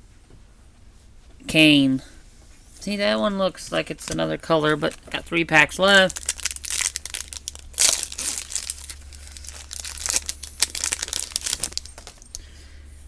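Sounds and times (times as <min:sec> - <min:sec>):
plastic wrapper tearing and crinkling: 0:05.8 - 0:12.4.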